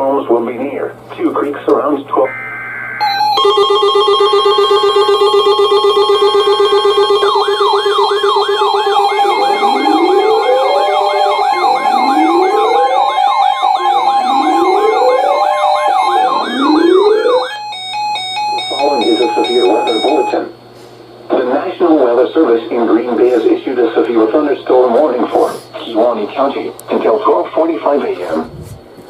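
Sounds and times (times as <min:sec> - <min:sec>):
fast yelping siren: 0:02.3 - 0:20.5
low wailing siren: 0:02.3 - 0:20.5
steady alert tone: 0:02.3 - 0:20.5.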